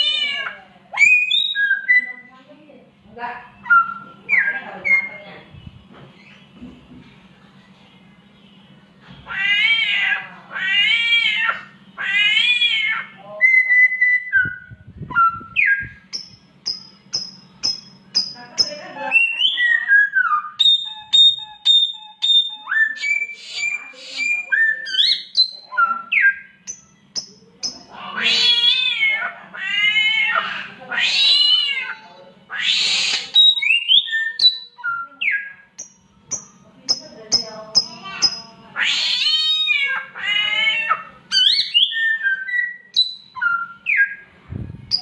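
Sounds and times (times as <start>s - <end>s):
bird whistles: 1.0s - 2.3s, 19.0s - 26.6s, 41.3s - 44.2s
bird imitating cat yowl: 9.3s - 13.2s, 27.9s - 35.6s, 38.1s - 44.1s.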